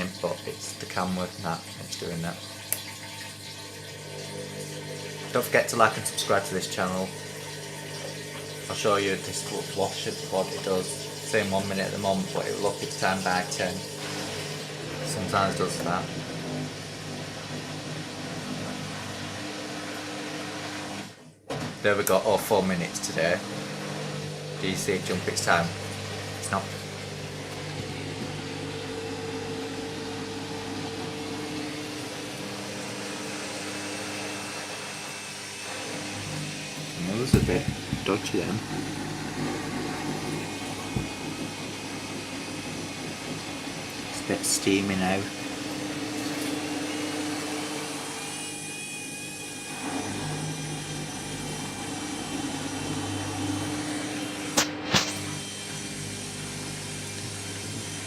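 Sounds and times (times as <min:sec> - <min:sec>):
washing machine motor hum and whine: 0:00.0 - 0:58.0.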